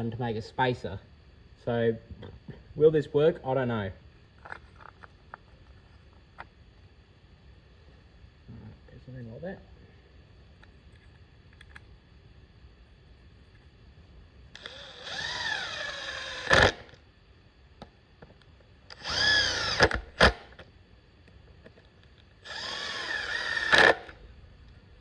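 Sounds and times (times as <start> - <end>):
power drill bursts: 14.6 - 16.9, 18.9 - 20.5, 22.4 - 24.2.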